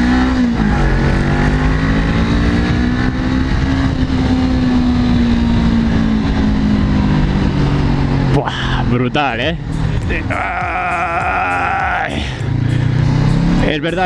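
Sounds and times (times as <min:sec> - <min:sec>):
loud motorcycle engine: 0:00.0 - 0:14.0.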